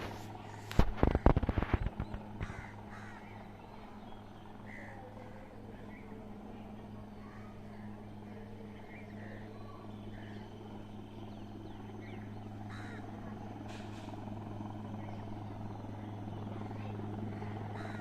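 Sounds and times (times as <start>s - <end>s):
helicopter humming: 0.0s - 18.0s
crows cawing: 2.4s - 3.6s, 4.6s - 5.5s, 7.3s - 10.4s, 12.1s - 13.4s, 17.3s - 18.0s.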